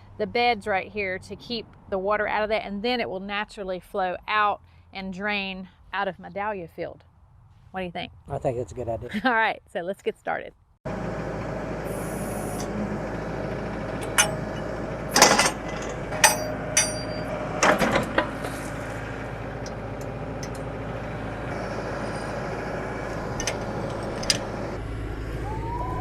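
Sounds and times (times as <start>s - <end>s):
tractor diesel engine running: 10.9s - 26.0s
backhoe clanks: 12.5s - 24.8s.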